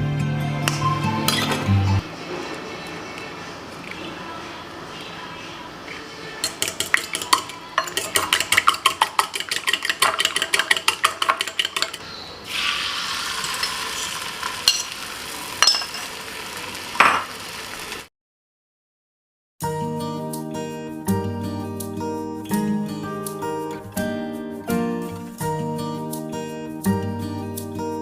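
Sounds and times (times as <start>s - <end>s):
metal utensil clinking against bowl: 6.4s - 12.0s, 13.4s - 15.0s, 15.6s - 16.1s
food sizzling in a hot pan: 12.5s - 18.1s.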